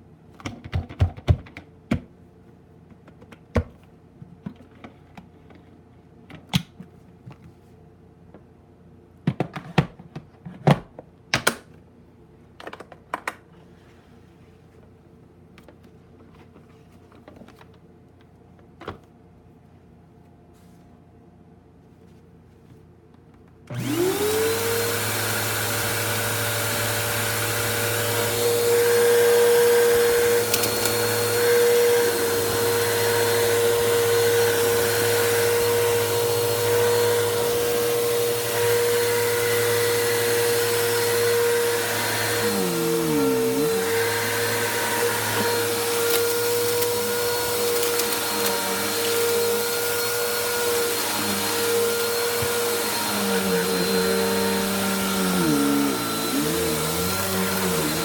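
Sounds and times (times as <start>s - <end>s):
vacuum cleaner motor running: 23.7s - 58.0s.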